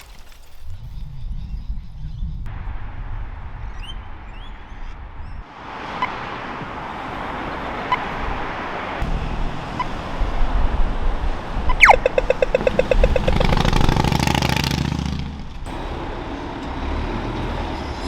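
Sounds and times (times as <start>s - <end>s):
city traffic: 5.5s - 18.0s
crossing signal ticks: 11.8s - 13.6s
falling electronic zap: 11.8s - 13.7s.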